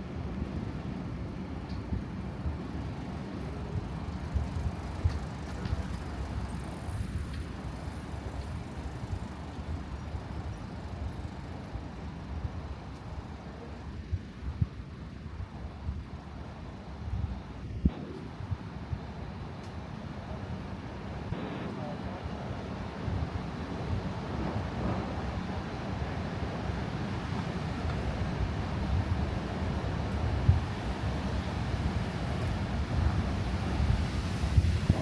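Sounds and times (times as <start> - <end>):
traffic rumbling: 0.0 - 12.9, 17.9 - 35.0
wind buffeting microphone: 21.0 - 35.0.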